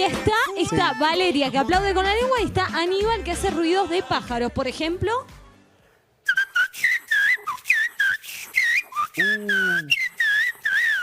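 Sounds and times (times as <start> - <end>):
man whistling birdsong: 6.2 - 11.0.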